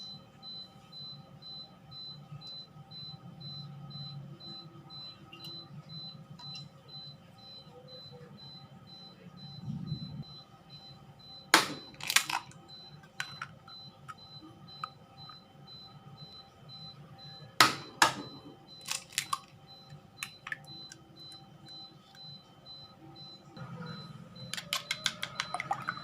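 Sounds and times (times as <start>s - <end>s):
faint steady hum: 0.0s - 26.0s
kitchen knocks and clicks: 24.5s - 26.0s.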